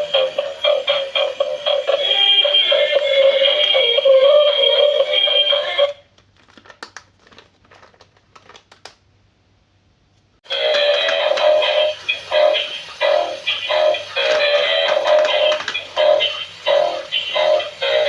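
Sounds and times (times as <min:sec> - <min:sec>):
music with synthetic vocal: 0:00.0 - 0:06.0, 0:10.5 - 0:18.0.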